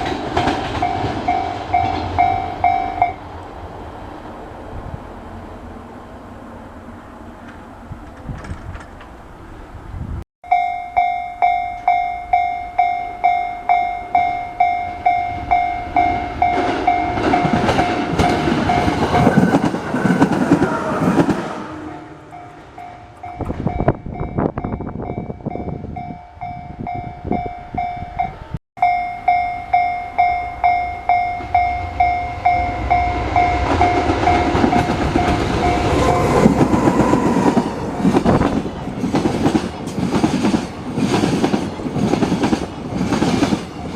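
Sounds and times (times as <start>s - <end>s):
train rumbling and wheel clatter: 0.0s - 10.2s, 13.7s - 28.5s, 29.7s - 43.9s
level crossing bell dinging: 10.4s - 18.0s.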